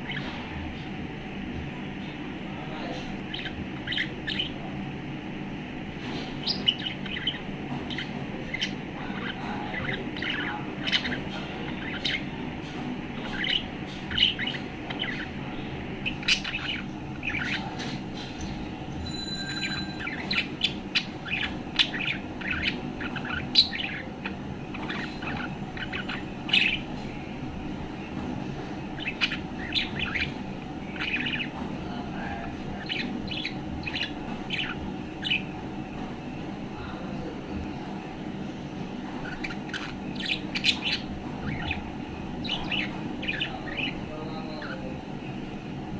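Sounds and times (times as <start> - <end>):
steady low hum: 0.0 - 45.9
budgerigar chirping and warbling: 3.3 - 4.6, 6.4 - 12.3, 13.2 - 15.4, 16.0 - 17.9, 20.0 - 26.9, 29.0 - 31.5, 32.7 - 35.5, 39.2 - 41.8, 42.4 - 44.0.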